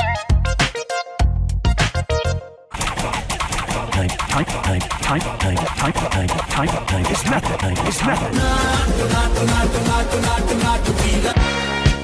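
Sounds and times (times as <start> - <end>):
stuttering music with deep bass: 2.7 - 11.4.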